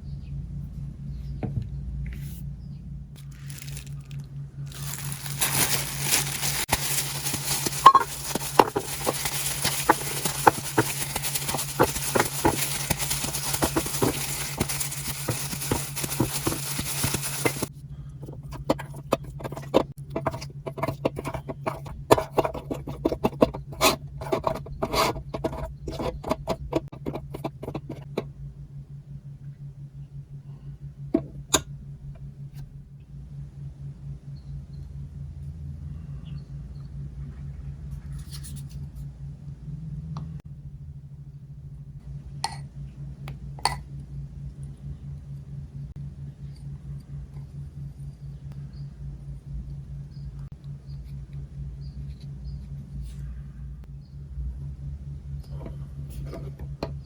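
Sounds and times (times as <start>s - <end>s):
faint low hum: 0.0s - 57.0s
sharp crackles and clicks: 3.2s - 17.7s
food scraping and crackling: 3.2s - 28.3s.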